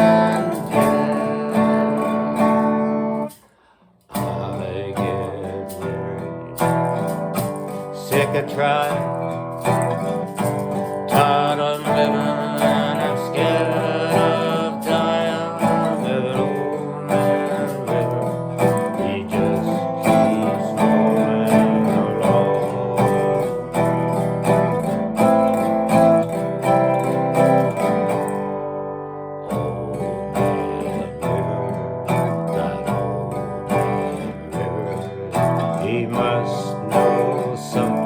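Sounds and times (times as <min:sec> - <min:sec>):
song with guitar and singing: 0:00.0 - 0:38.0.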